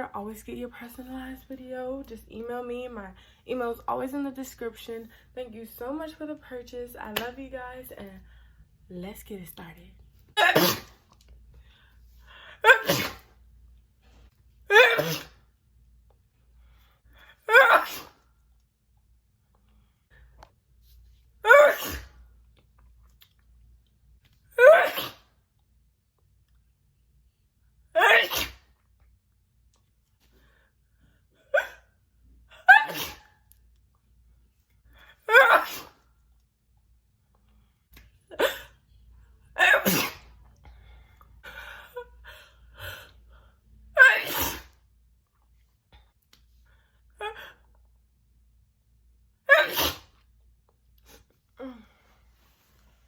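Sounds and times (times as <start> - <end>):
woman sneezing: 10.4 - 11.0, 12.6 - 13.3, 14.7 - 15.4, 17.5 - 18.2, 21.4 - 22.2, 24.6 - 25.3, 28.0 - 28.7, 32.7 - 33.4, 35.3 - 36.0, 39.6 - 40.3, 44.0 - 44.8, 49.5 - 50.2.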